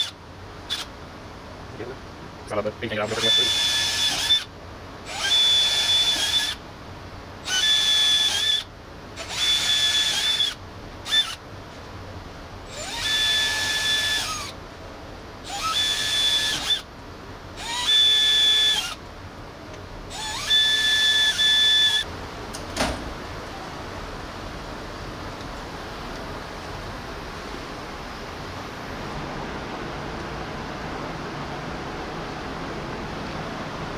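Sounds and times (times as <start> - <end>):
power drill whine: 0.0 - 0.9, 3.0 - 6.6, 7.4 - 11.4, 12.7 - 14.6, 15.4 - 16.9, 17.6 - 19.0, 20.1 - 22.1.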